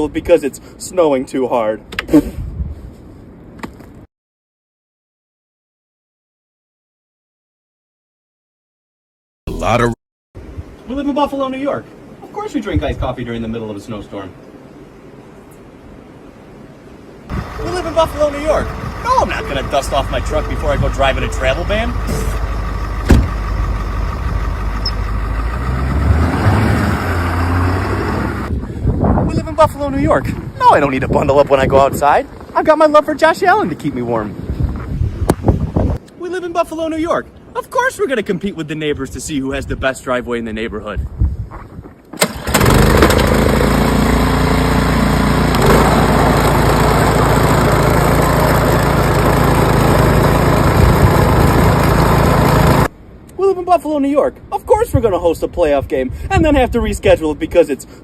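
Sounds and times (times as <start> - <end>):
truck engine running: 17.3 - 28.5, 42.5 - 52.9
sharp knock: 23.0 - 23.4.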